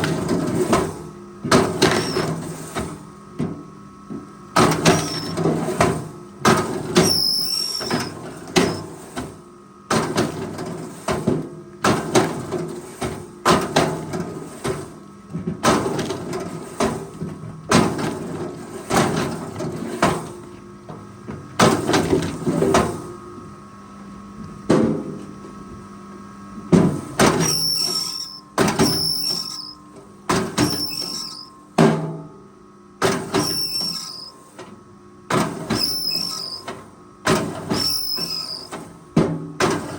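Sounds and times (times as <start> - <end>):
high metallic squeals: 1.9 - 2.3, 4.9 - 5.4, 7.0 - 8.9, 27.4 - 29.8, 30.6 - 31.5, 33.4 - 34.3, 35.8 - 36.7, 37.8 - 38.7
forestry machine humming: 26.2 - 29.8.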